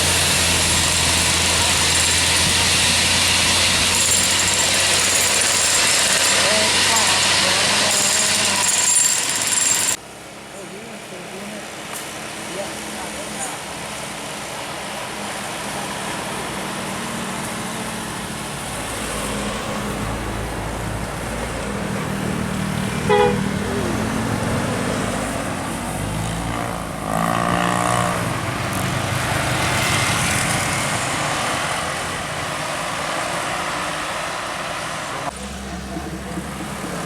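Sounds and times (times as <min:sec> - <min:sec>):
bus engines running: 0:00.0 - 0:37.0
short horn toot: 0:23.0 - 0:23.6
wavering multi-tone bus horn: 0:23.0 - 0:23.8.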